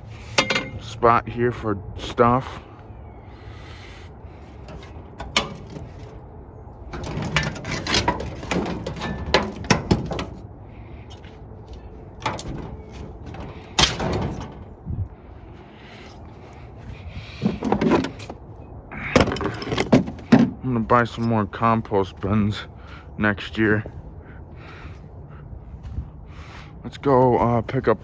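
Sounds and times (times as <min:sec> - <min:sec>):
hard objects knocking and clattering: 0:06.9 - 0:10.4.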